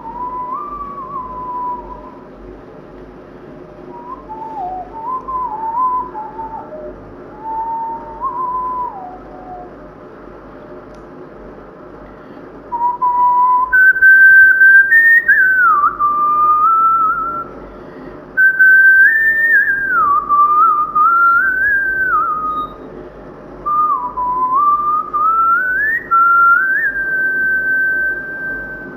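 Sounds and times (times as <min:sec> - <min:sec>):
person whistling a melody: 0:00.0 - 0:02.2, 0:03.9 - 0:09.7, 0:12.7 - 0:17.6, 0:18.4 - 0:22.9, 0:23.7 - 0:28.9.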